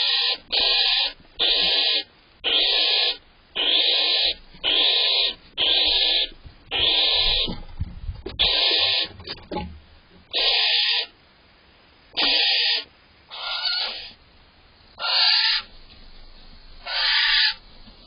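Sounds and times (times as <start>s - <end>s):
barn owl hissing snore calls: 0.0s - 7.6s, 8.4s - 9.2s, 10.3s - 11.2s, 12.1s - 14.2s, 15.0s - 15.7s, 16.8s - 17.6s.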